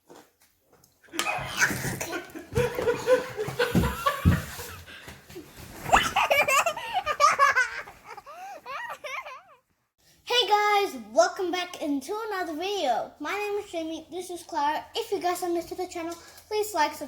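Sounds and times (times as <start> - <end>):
children laughing: 1.1 - 4.9, 5.8 - 9.6
dull thumps: 2.5 - 4.7.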